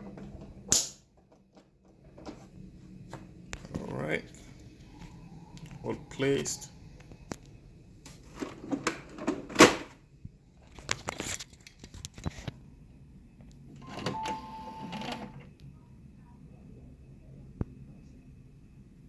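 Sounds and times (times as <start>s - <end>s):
printer motor whirring: 13.6s - 15.6s.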